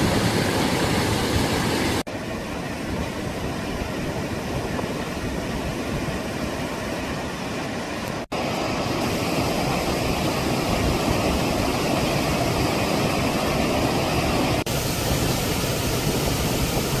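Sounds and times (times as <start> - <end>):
water falling in a stream: 0.0 - 17.0.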